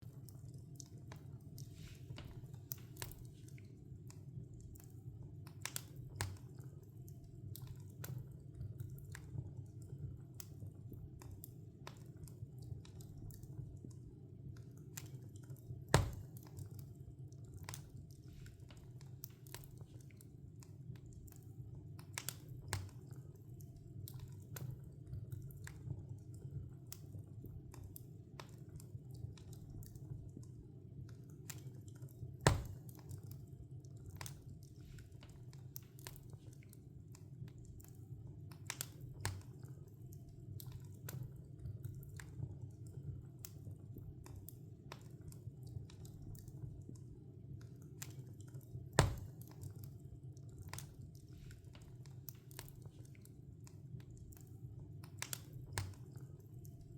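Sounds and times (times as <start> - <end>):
fire crackling: 0.0 - 56.9
fire rumbling: 7.5 - 23.3, 28.5 - 33.4, 47.9 - 56.3
wood popping loudly: 16.0 - 16.3, 32.5 - 32.8, 49.0 - 49.3.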